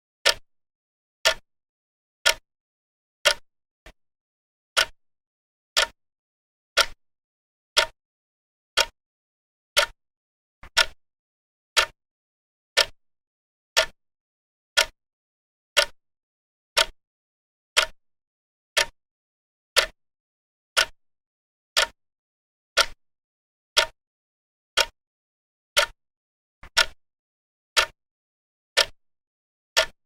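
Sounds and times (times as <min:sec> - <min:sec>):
clock ticking: 0:00.2 - 0:00.4, 0:01.2 - 0:01.4, 0:02.2 - 0:02.4, 0:03.2 - 0:04.0, 0:04.8 - 0:05.0, 0:05.8 - 0:06.0, 0:06.8 - 0:07.0, 0:07.8 - 0:08.0, 0:08.8 - 0:09.0, 0:09.8 - 0:10.0, 0:10.6 - 0:11.0, 0:11.8 - 0:12.0, 0:12.8 - 0:13.0, 0:13.8 - 0:14.0, 0:14.8 - 0:15.0, 0:16.8 - 0:17.0, 0:17.8 - 0:18.0, 0:18.8 - 0:19.0, 0:19.8 - 0:20.0, 0:20.8 - 0:21.0, 0:21.8 - 0:22.0, 0:22.8 - 0:23.0, 0:23.8 - 0:24.0, 0:24.8 - 0:25.0, 0:25.8 - 0:26.0, 0:26.6 - 0:27.0, 0:27.8 - 0:28.0, 0:28.8 - 0:29.0, 0:29.8 - 0:30.0.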